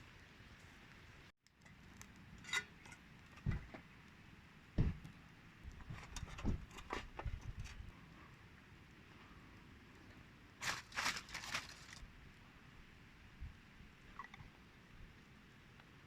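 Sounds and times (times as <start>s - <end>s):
dull thumps of objects: 3.4s - 3.8s, 4.8s - 5.1s, 5.7s - 7.8s.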